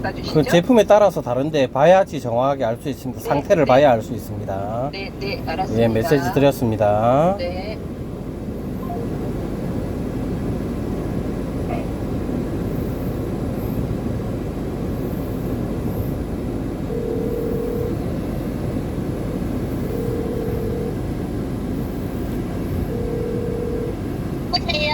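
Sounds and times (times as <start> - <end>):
steady low rumble: 0.0 - 24.9
telephone ringback beeps: 8.8 - 9.2, 16.9 - 18.0, 19.3 - 21.0, 22.8 - 24.0.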